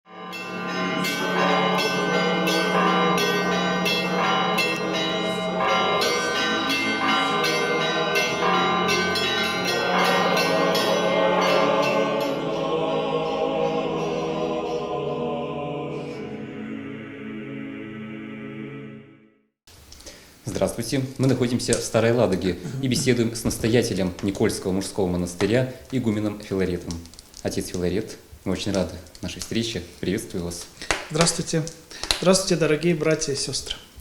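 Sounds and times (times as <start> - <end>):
church bells ringing: 0.1 - 15.0.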